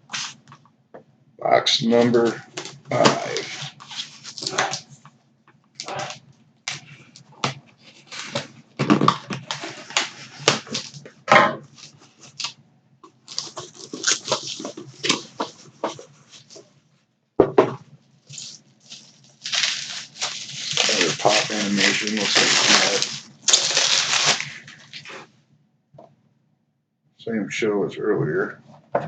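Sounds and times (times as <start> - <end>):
cardboard box rustling and scraping: 2.5 - 5.0, 5.8 - 12.5, 13.1 - 16.7, 18.3 - 25.3.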